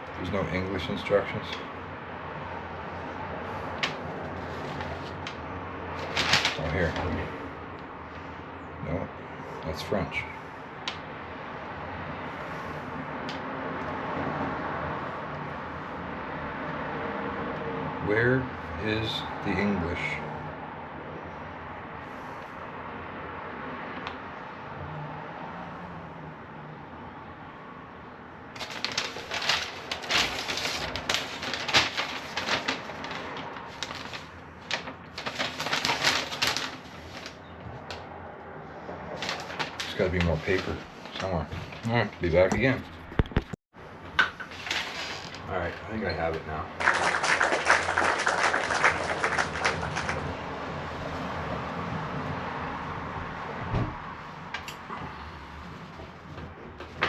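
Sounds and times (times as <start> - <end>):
paper and packaging crinkling: 3.4 - 7.4, 28.6 - 38.0, 39.2 - 42.0, 46.8 - 50.3.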